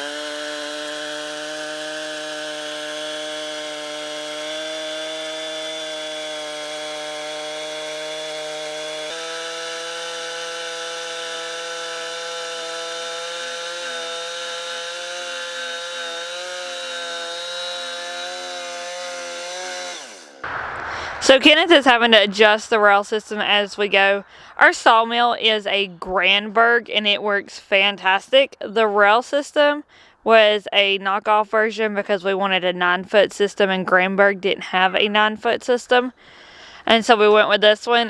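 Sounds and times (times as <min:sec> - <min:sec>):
chainsaw cutting through log: 0:00.0 - 0:26.4.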